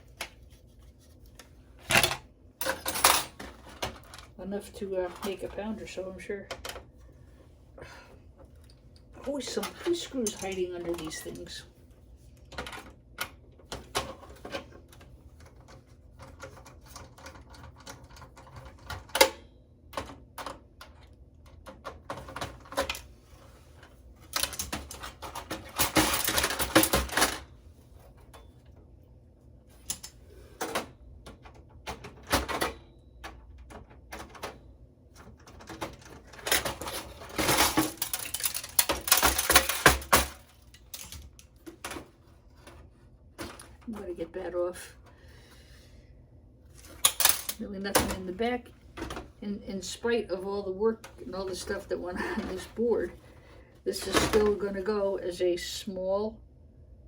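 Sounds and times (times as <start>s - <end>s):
computer parts clattering: 24.3s - 27.5s, 35.2s - 42.8s, 46.8s - 48.3s.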